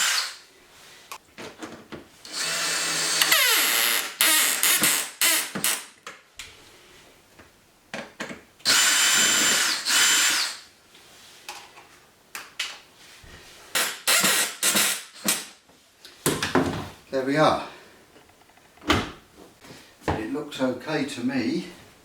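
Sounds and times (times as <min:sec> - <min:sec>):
power drill whirring: 0:00.0 - 0:00.4, 0:02.2 - 0:05.8, 0:08.7 - 0:10.6, 0:13.8 - 0:15.4.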